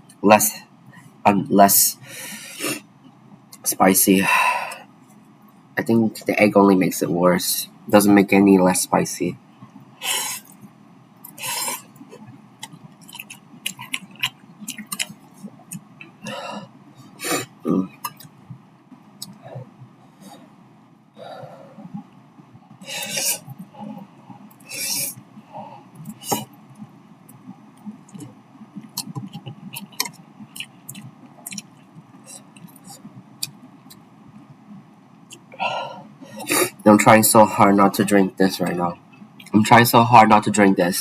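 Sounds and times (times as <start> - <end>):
person chewing noodles: 11.2 - 18.4, 22.8 - 25.1, 27.3 - 34.0
wet mouth clicks: 12.6 - 16.2, 27.8 - 34.0.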